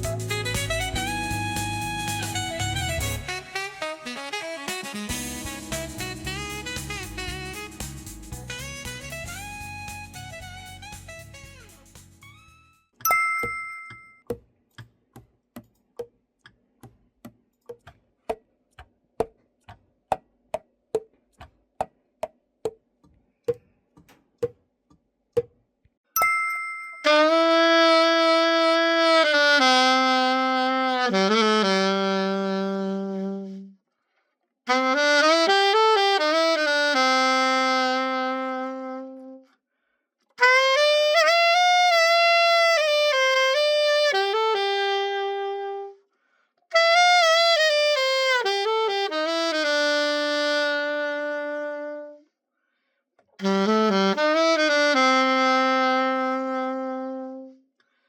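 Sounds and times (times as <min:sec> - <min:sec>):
alto saxophone short phrases: 0:00.0 - 0:09.7, 0:27.1 - 0:33.8, 0:34.7 - 0:39.5, 0:40.4 - 0:46.0, 0:53.4 - 0:57.6.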